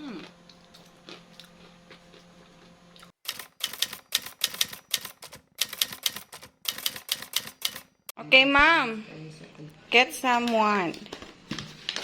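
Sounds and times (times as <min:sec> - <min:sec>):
crunchy chewing of chips: 0:00.0 - 0:04.5
room hum: 0:00.0 - 0:12.0.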